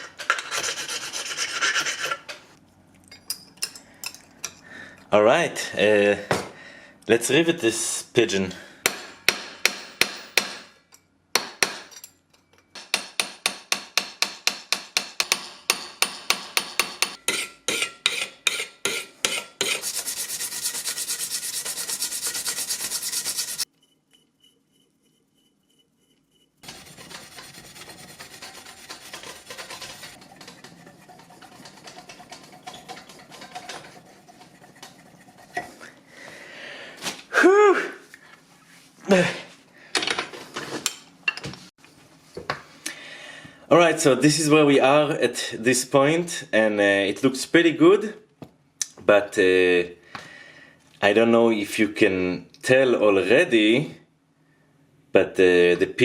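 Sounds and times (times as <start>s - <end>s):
fast rasping on metal: 0.4s - 2.3s, 17.3s - 23.7s, 26.6s - 35.8s
rubbing on brass: 19.6s - 23.7s, 24.7s - 35.8s.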